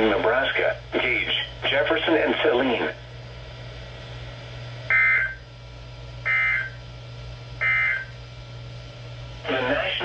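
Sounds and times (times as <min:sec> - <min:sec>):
steady low hum: 0:00.0 - 0:10.0
digital data code bursts: 0:07.6 - 0:08.2.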